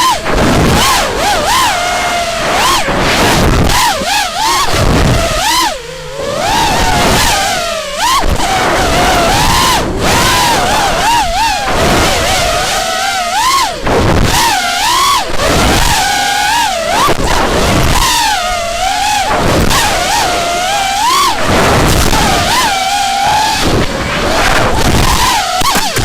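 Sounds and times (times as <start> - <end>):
low rumble of wind: 0.0 - 14.5
quadcopter motors whining: 0.0 - 26.0.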